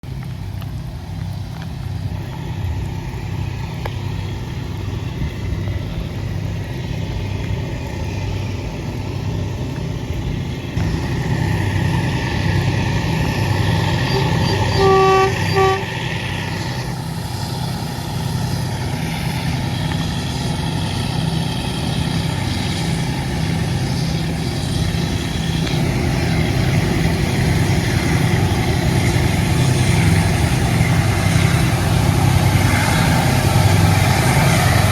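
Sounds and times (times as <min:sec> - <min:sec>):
diesel locomotive engines rumbling: 0:00.0 - 0:34.9
locomotive horn blasts: 0:13.3 - 0:17.0.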